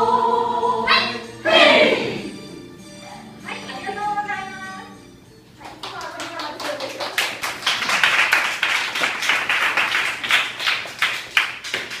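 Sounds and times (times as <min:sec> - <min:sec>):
group clapping in rhythm: 0:05.6 - 0:12.0.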